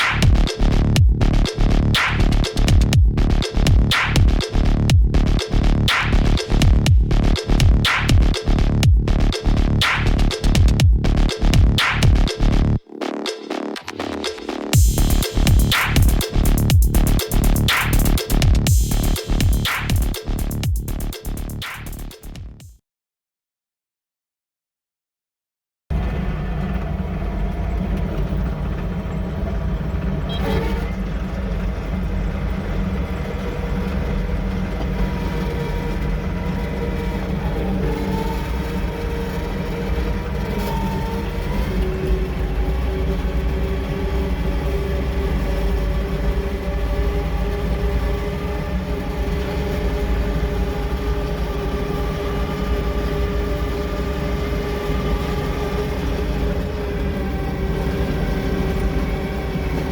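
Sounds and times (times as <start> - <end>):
bulldozer diesel drone: 0.0 - 12.8, 14.7 - 22.0, 25.9 - 59.9
whining tones: 25.9 - 59.9.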